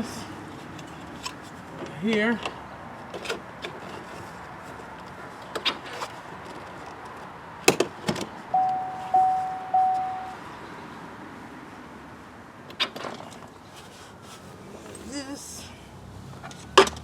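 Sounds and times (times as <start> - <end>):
car electronic chime tones: 8.6 - 10.4.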